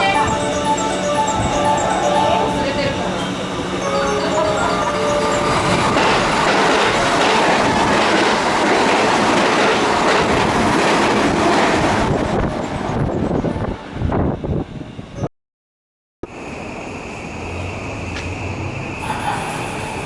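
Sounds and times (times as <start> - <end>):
train wheels on rails: 0.1 - 14.5, 16.4 - 20.0
clickety-clack over rail joints: 5.9 - 13.5.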